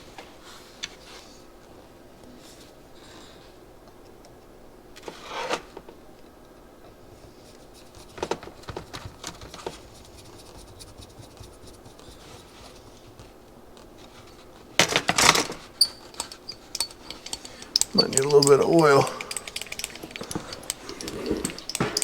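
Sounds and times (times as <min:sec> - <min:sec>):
screwdriver clicking and scraping: 0:14.2 - 0:22.0.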